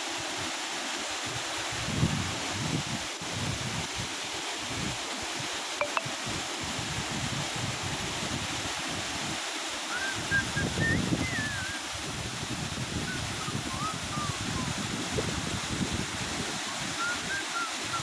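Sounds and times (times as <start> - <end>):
wind rumbling on microphone: 1.3 - 5.5, 6.1 - 9.4, 10.2 - 18.0
waterfall rushing: 7.6 - 18.0.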